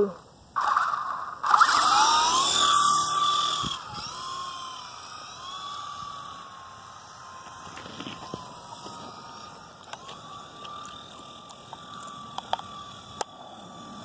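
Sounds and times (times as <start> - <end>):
toy helicopter motor whining: 0.0 - 14.0.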